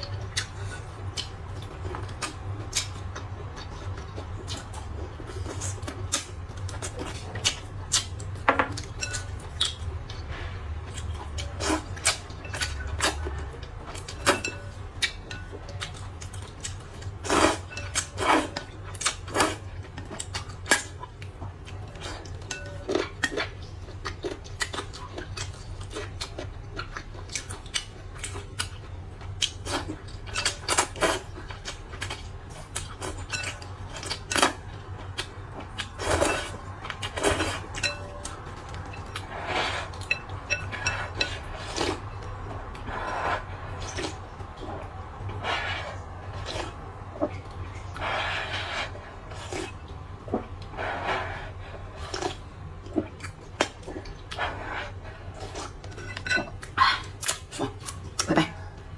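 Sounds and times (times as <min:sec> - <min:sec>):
steady low hum: 0:00.0 - 0:58.9
utensils clinking against bowl: 0:05.4 - 0:10.2, 0:10.9 - 0:21.0, 0:21.7 - 0:23.6, 0:29.6 - 0:31.3, 0:32.0 - 0:44.2, 0:55.8 - 0:58.6.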